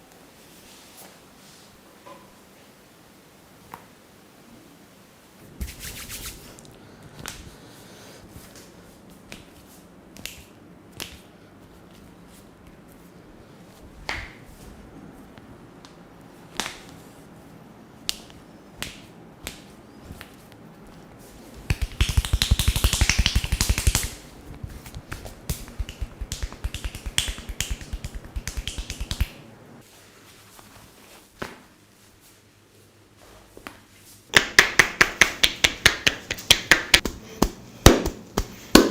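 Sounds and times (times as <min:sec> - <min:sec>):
sharp pops and snaps: 0:21.6 - 0:24.2
rapid tapping strokes: 0:21.6 - 0:29.3.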